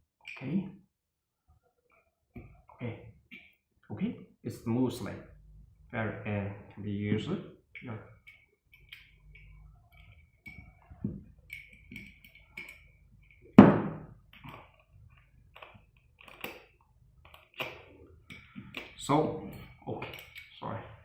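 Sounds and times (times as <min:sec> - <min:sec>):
loud metal thunk: 0:13.6 - 0:14.1.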